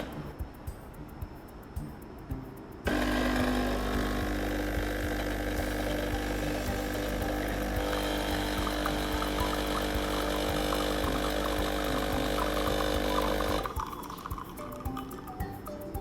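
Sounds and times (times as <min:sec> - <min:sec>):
espresso machine pump buzzing: 0:02.9 - 0:14.6.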